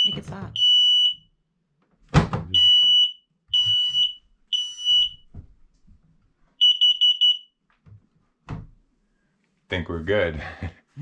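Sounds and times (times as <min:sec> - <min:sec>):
smoke alarm beeping: 0:00.0 - 0:01.3, 0:02.5 - 0:05.3, 0:06.6 - 0:07.6.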